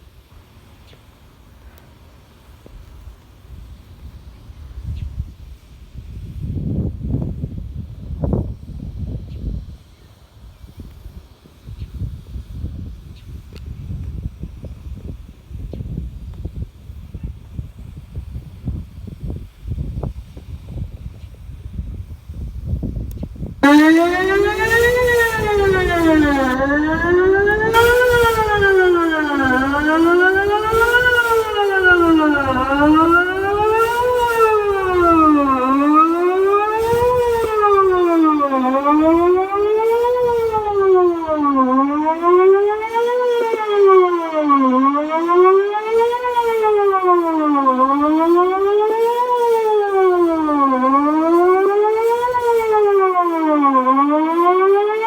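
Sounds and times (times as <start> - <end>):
warning siren wailing: 23.6 - 55.0.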